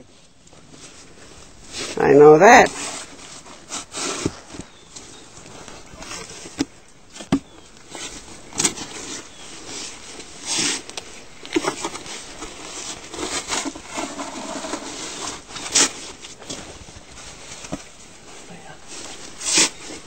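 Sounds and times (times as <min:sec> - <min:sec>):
snow shovel scraping snow: 0:02.7 - 0:04.5, 0:11.7 - 0:16.2.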